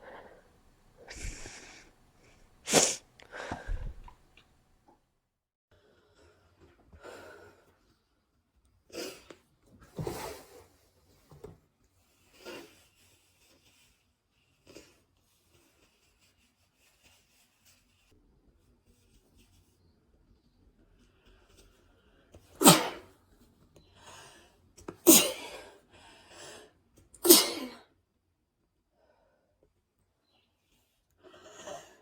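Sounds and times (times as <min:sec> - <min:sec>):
person breathing: 0:00.0 - 0:04.2
person sneezing: 0:01.0 - 0:01.9, 0:02.6 - 0:04.1, 0:22.6 - 0:23.1, 0:25.0 - 0:25.6, 0:27.2 - 0:27.8.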